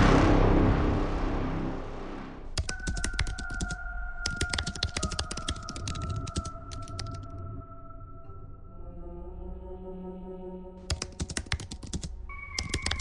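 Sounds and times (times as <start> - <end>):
keyboard typing: 2.6 - 7.3, 10.8 - 13.0.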